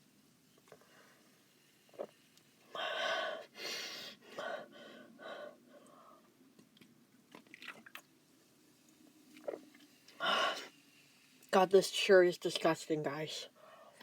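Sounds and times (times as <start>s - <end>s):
person gulping: 1.9s - 2.2s, 9.4s - 9.7s.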